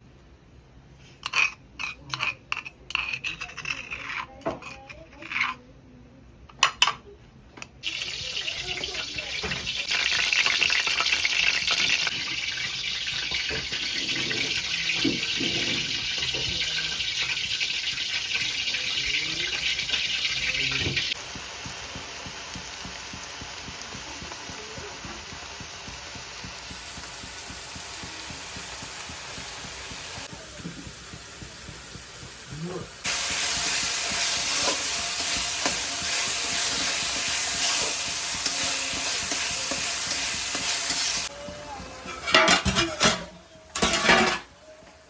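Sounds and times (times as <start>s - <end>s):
water running from a tap: 7.8s - 42.1s.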